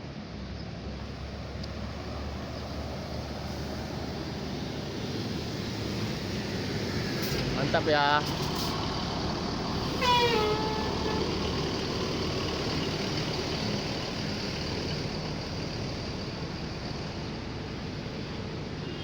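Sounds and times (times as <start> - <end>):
diesel engine idling: 1.0 - 19.0
bus horn sliding down in pitch: 9.8 - 12.1.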